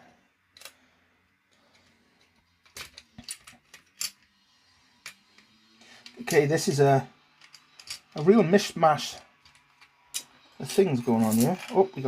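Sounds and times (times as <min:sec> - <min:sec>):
plastic toy parts clattering: 0:02.2 - 0:04.3, 0:07.3 - 0:08.2, 0:11.2 - 0:12.0.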